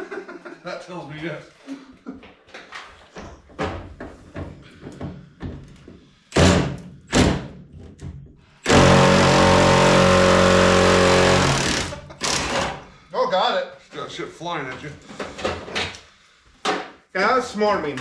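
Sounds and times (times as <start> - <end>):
power tool running: 8.6 - 12.8.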